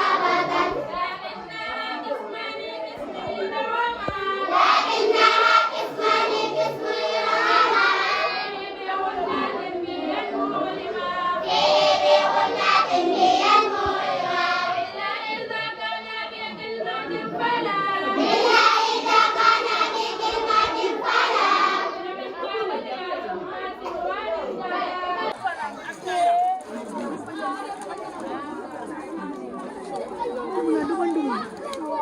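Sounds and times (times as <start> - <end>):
children singing in unison: 0.0 - 24.9.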